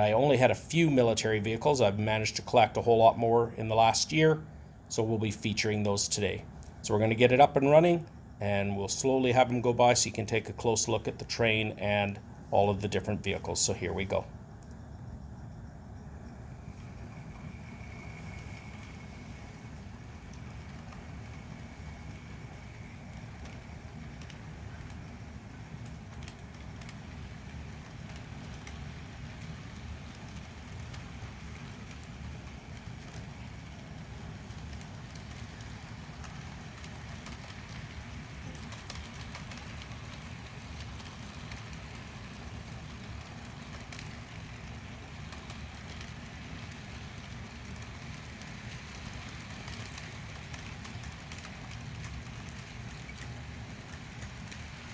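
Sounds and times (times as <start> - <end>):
model train rumbling on track: 0.0 - 15.0, 15.9 - 54.9
light clicks: 17.1 - 54.9.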